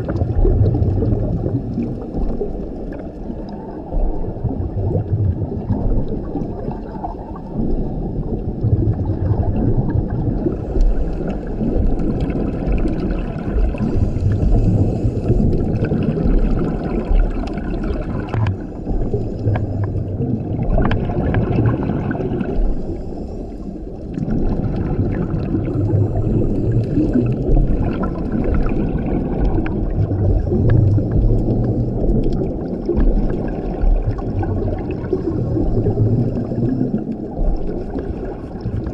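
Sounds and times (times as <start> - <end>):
exhaled bubbles rumbling: 0.0 - 38.9
diver breathing through regulator: 10.4 - 20.5, 22.0 - 24.2, 25.6 - 28.0.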